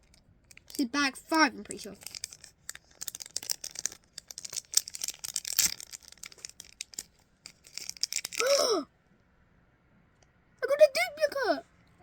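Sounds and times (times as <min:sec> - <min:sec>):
plastic bag tearing and crinkling: 0:00.5 - 0:00.8, 0:01.7 - 0:08.6
person sighing: 0:08.4 - 0:08.9.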